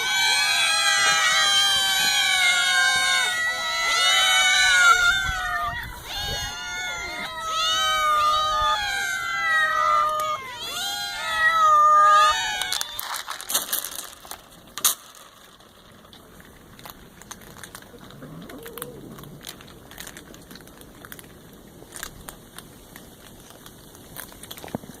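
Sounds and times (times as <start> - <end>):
crinkling and clicking: 12.5 - 25.0.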